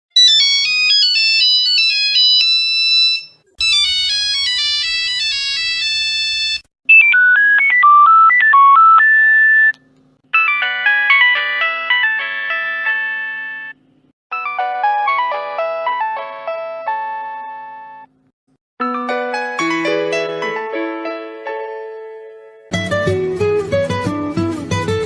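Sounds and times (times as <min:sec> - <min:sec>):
electronic phone ringtone melodies: 0:00.2 - 0:09.7, 0:10.3 - 0:18.1.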